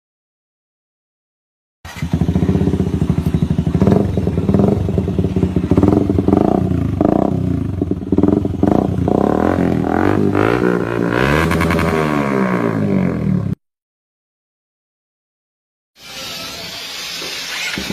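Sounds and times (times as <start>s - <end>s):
motorcycle engine idling and revving: 1.9s - 13.6s.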